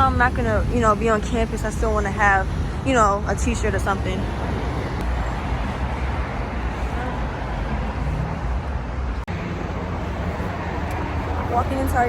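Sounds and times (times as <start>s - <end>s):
street traffic rumble: 0.0s - 12.0s.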